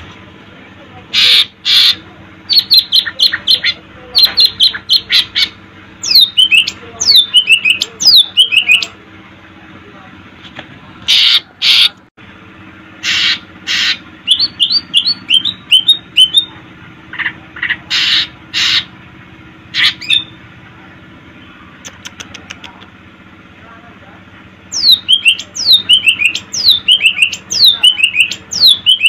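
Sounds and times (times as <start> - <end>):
bird squawking: 1.1 - 9.0, 11.0 - 12.0, 13.0 - 19.0, 19.7 - 20.4, 24.7 - 29.0
bird whistling: 1.2 - 8.9, 13.0 - 16.5, 19.8 - 20.4, 24.7 - 29.0.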